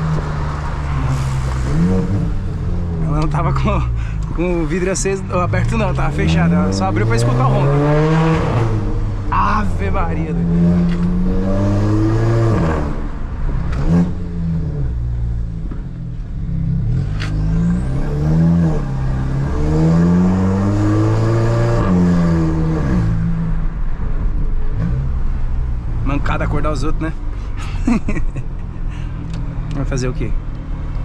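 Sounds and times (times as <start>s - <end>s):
turbocharged car engine revving: 0.0s - 15.4s, 16.4s - 23.7s.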